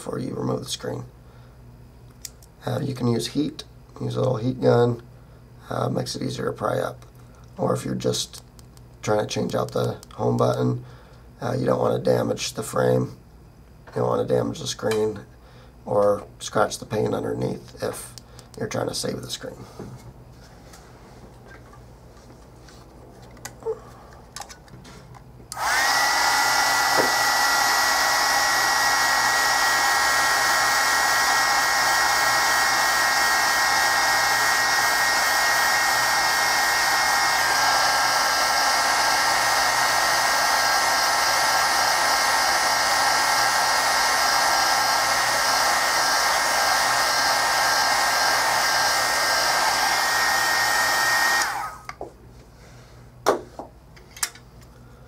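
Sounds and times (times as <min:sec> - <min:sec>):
heat gun blowing: 0:25.5 - 0:52.0.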